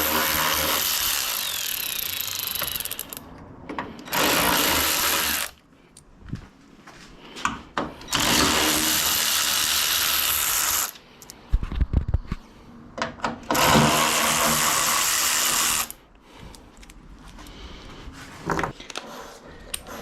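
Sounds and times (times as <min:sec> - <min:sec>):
power drill running: 0:00.0 - 0:03.2, 0:04.0 - 0:05.6, 0:08.1 - 0:11.0, 0:13.5 - 0:16.0.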